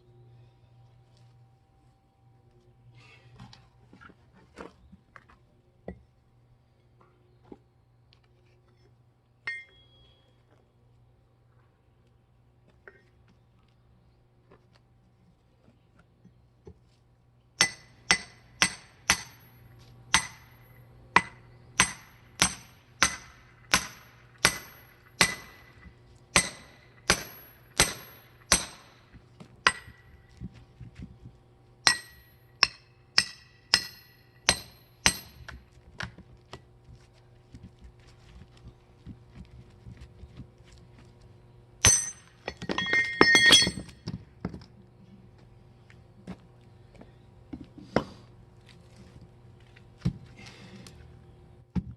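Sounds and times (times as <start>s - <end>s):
hammer striking metal wedge: 9.5s - 10.0s, 17.6s - 20.6s, 21.2s - 29.0s, 29.6s - 30.0s, 31.8s - 35.6s, 41.8s - 44.0s
jangling metallic clatter: 41.9s - 43.9s.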